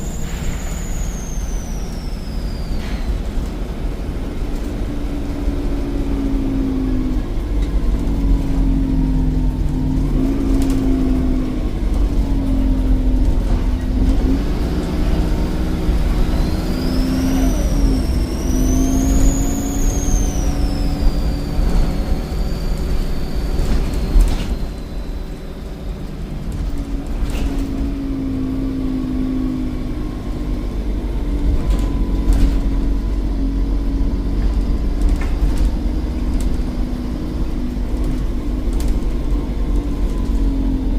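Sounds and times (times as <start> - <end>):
turbo whistle: 0.0 - 3.2, 16.0 - 25.6
diesel bus engine under load: 0.0 - 40.9.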